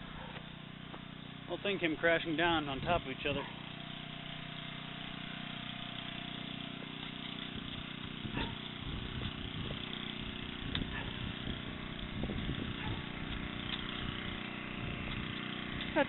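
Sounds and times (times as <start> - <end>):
engine idling hum: 0.0 - 16.0.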